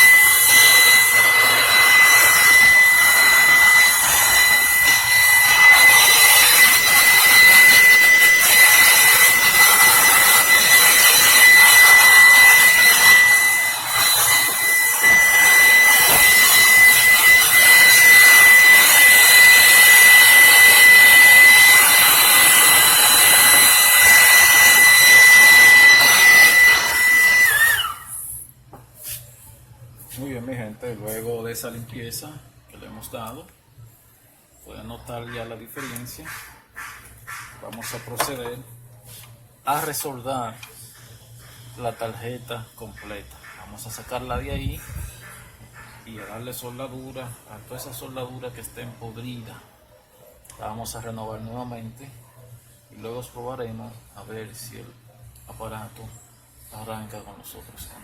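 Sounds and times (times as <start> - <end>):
electric air blower whine: 0.0 - 28.4.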